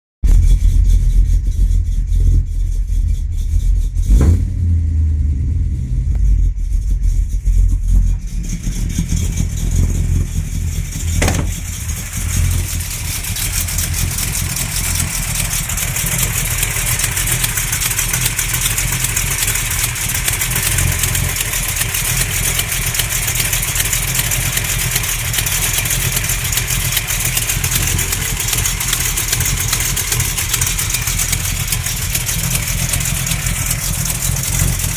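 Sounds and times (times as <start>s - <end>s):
engine rumble with ticking clatter: 0.2s - 34.9s
sharp engine knocks: 4.1s - 4.6s, 7.6s - 18.7s.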